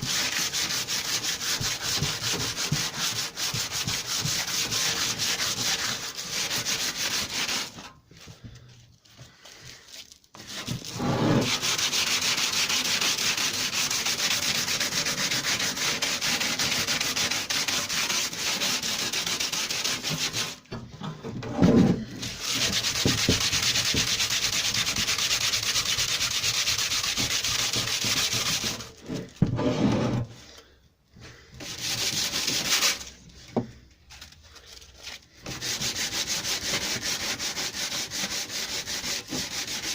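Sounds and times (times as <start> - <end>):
sandpaper scratching on metal: 0.0 - 7.9, 10.4 - 20.7, 22.2 - 29.2, 31.6 - 33.2, 35.4 - 39.9.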